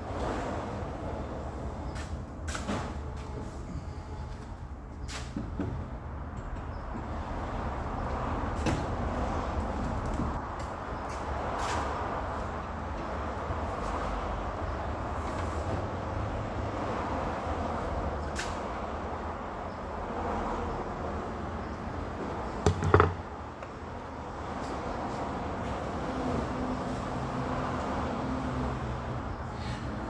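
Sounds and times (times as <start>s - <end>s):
loud knocks and clatter: 22.6s - 23.3s.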